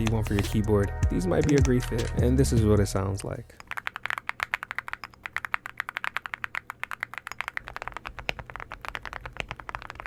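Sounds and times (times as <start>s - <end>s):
mechanical keyboard key clacks: 3.6s - 10.0s.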